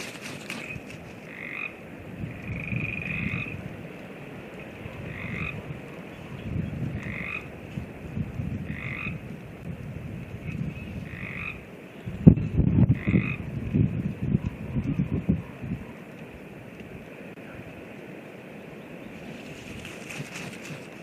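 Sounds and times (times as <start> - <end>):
wind rumble on microphone: 0.0 - 21.0
frog croaking: 0.6 - 3.7, 5.0 - 5.8, 6.9 - 7.6, 8.6 - 9.3, 10.4 - 11.7, 12.8 - 13.5.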